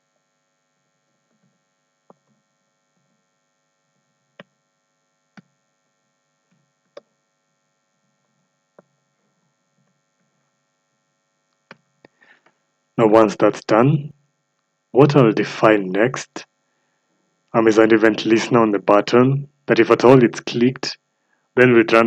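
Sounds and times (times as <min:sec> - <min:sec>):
low electrical hum: 0:09.0 - 0:14.3.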